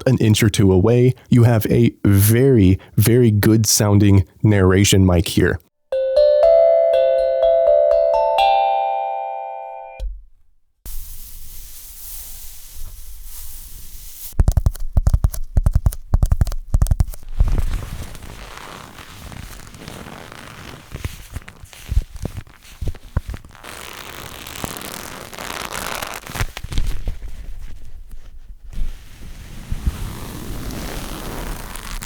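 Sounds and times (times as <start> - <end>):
plucked guitar notes: 5.9 - 10.1
steady hiss: 10.9 - 14.4.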